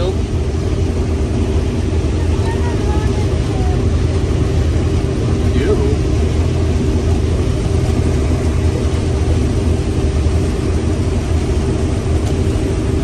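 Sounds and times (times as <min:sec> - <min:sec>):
farm machine engine droning: 0:00.0 - 0:13.0.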